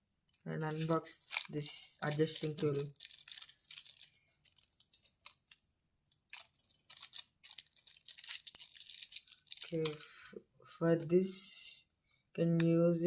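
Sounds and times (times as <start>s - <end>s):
plastic packaging crinkling: 0.3s - 10.3s.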